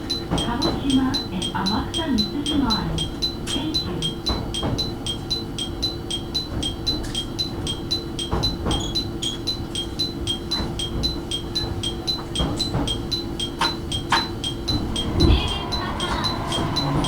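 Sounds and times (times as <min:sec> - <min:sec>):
train low hum: 0:00.0 - 0:05.6, 0:09.7 - 0:17.0
electronic two-tone warning chime: 0:00.0 - 0:17.0.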